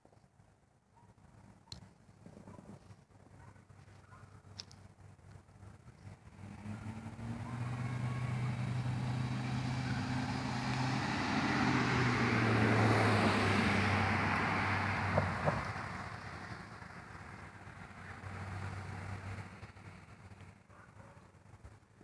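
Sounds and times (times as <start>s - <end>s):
vehicle engine passing by: 6.0s - 20.4s.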